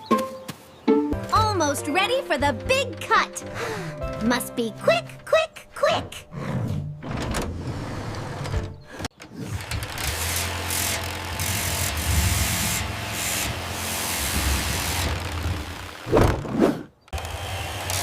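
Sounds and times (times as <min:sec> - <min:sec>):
table saw cutting: 0:09.2 - 0:16.1, 0:17.2 - 0:18.0.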